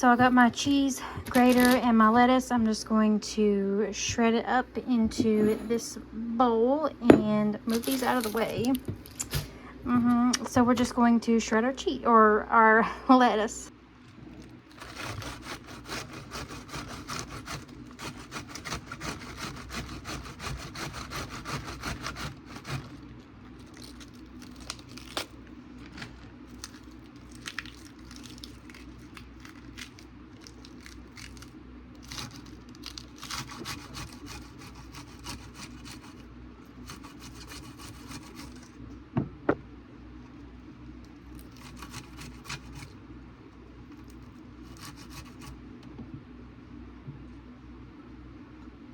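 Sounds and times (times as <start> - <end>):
steady low hum: 0.0 - 48.9
lettuce scraping on grater: 14.4 - 25.2, 25.9 - 36.2, 36.8 - 38.8, 41.3 - 43.0, 44.0 - 45.6.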